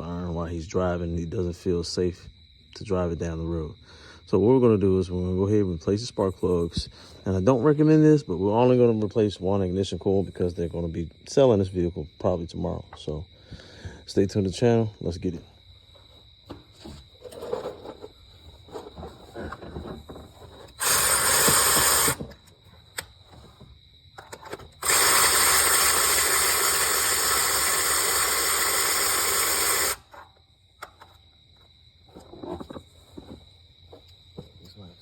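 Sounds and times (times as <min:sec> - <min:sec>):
compressed air hissing: 0:20.8 - 0:22.3, 0:24.8 - 0:30.1.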